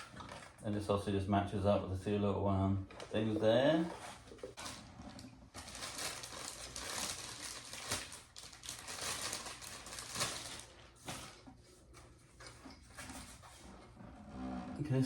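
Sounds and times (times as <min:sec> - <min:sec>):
rustling and crinkling: 0:02.8 - 0:14.8.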